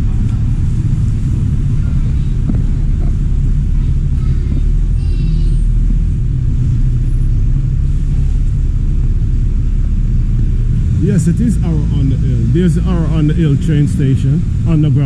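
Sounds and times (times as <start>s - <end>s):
bus engines and traffic rumble: 0.0s - 15.0s.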